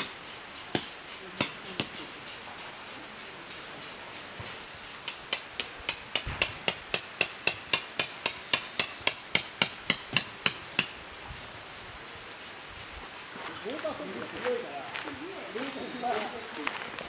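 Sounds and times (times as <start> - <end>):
hammer striking metal tent peg: 0.0 - 11.0.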